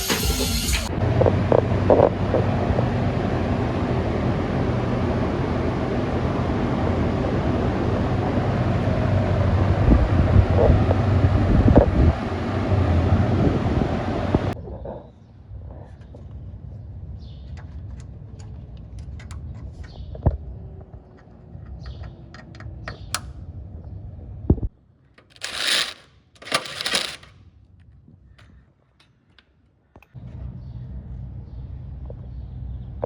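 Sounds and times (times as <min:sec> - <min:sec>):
low steady rumble: 0:00.8 - 0:14.6, 0:30.2 - 0:33.0.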